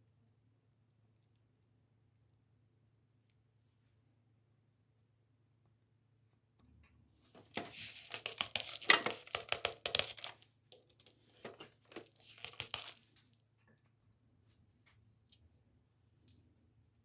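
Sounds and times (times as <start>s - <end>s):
crinkling and tearing: 7.4s - 13.4s.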